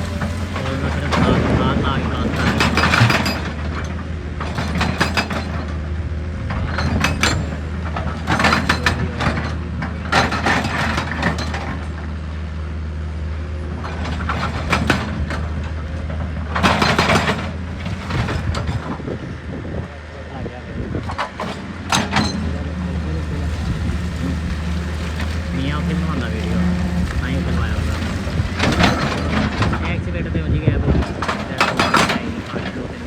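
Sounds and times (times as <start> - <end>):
heavy machinery engine humming: 0.0 - 33.0
clattering and cracking of rock: 6.4 - 12.1, 21.0 - 30.1, 30.8 - 33.0.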